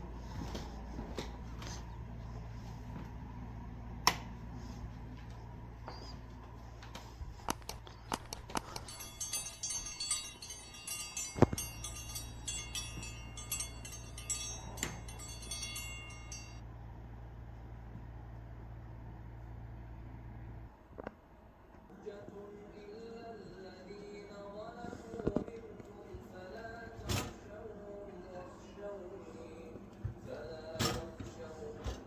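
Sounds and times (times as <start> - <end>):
steady low hum: 0.0 - 32.0
high metallic jingling: 7.5 - 16.6.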